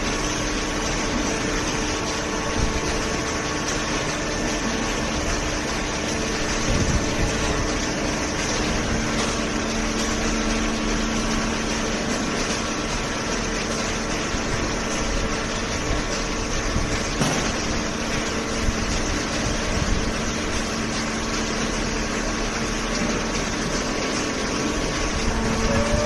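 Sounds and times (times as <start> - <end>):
hydraulic pump motor humming: 0.0 - 26.0
lower hum tone: 25.1 - 26.0.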